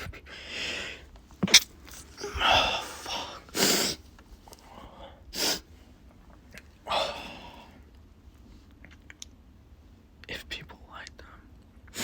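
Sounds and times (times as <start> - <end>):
breath: 0.3 - 1.1.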